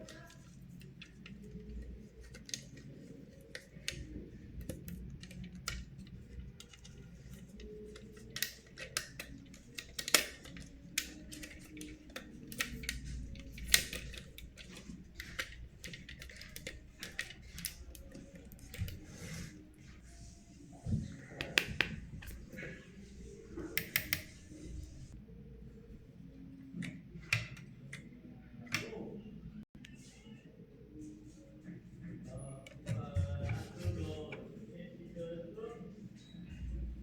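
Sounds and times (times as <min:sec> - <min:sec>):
plastic pieces clicking and tapping: 0:00.0 - 0:19.0.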